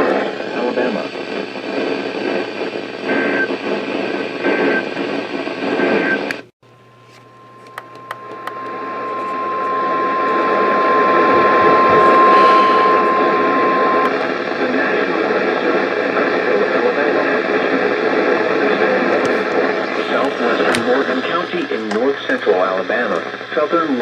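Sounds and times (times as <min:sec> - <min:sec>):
radio static: 0:00.0 - 0:06.5, 0:07.2 - 0:24.0
steady alert tone: 0:07.3 - 0:14.5.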